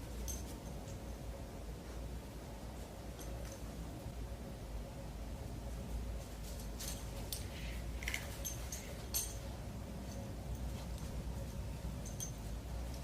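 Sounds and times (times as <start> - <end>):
light sharp clicks and clinks: 0.0 - 1.2, 3.0 - 3.9, 6.2 - 13.0
steady low hum: 0.0 - 13.0.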